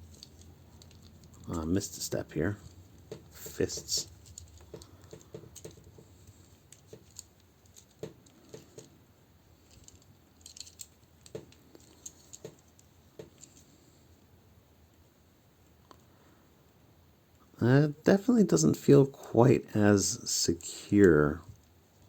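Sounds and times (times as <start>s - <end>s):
plastic parts clicking: 0.0s - 1.8s, 2.6s - 9.0s, 9.6s - 13.6s.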